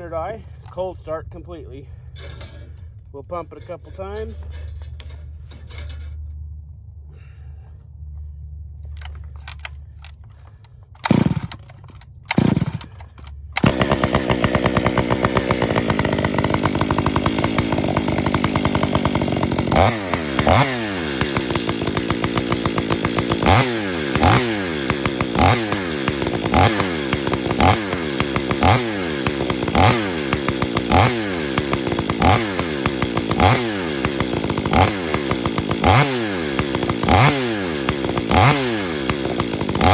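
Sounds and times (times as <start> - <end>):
chainsaw engine running: 9.0 - 39.9
pull cord pulls: 9.0 - 39.9.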